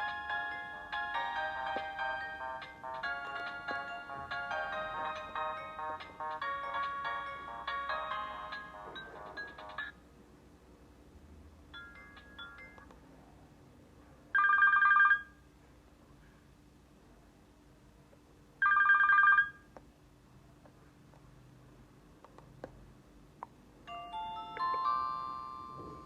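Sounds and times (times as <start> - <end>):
phone ringtone telephone bell: 0.0 - 10.0, 11.8 - 12.8, 14.4 - 15.4, 18.6 - 19.6, 23.9 - 26.0.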